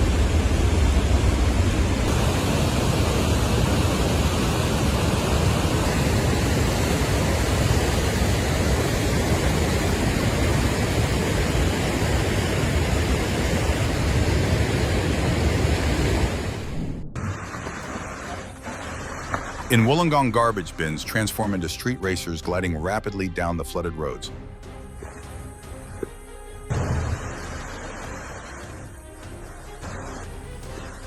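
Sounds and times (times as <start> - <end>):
torrent of water rushing: 0.0 - 20.1, 26.7 - 28.9.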